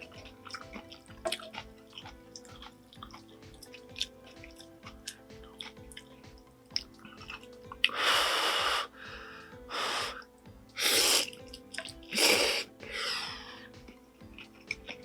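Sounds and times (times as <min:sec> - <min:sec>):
quiet background music: 0:00.0 - 0:15.0
noodles being slurped: 0:10.8 - 0:12.8.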